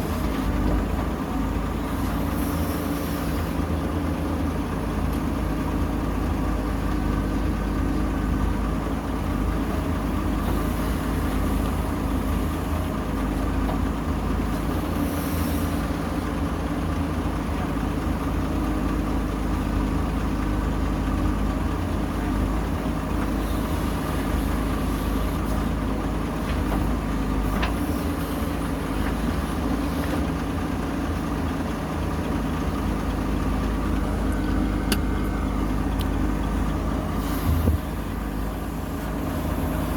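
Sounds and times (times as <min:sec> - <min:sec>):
backhoe diesel engine running: 0:00.0 - 0:39.9.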